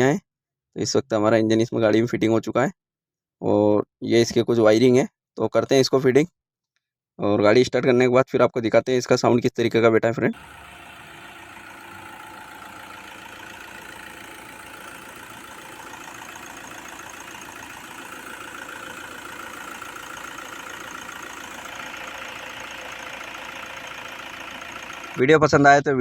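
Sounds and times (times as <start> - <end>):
car engine idling: 10.3 - 25.2.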